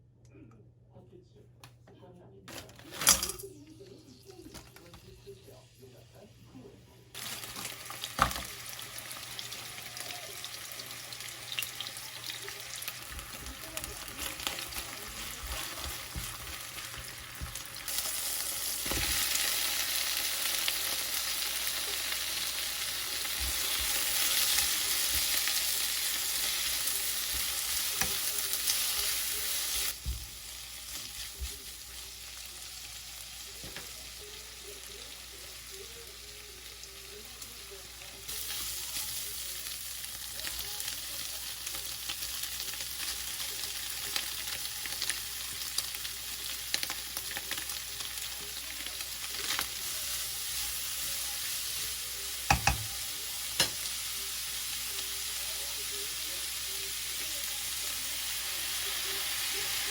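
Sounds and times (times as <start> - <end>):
food sizzling in a frying pan: 2.9 - 59.9
utensil knocking against pan: 52.5 - 52.9.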